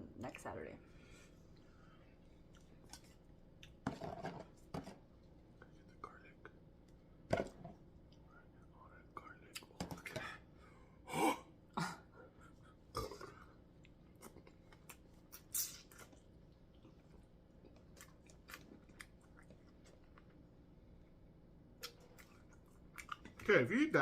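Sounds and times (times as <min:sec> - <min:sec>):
wet chewing: 0:01.5 - 0:03.8, 0:13.8 - 0:20.4, 0:21.8 - 0:23.5.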